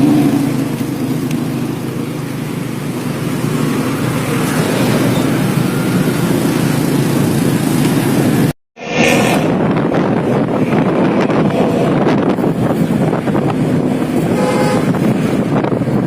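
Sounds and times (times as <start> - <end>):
bus engine droning: 0.0 - 8.6.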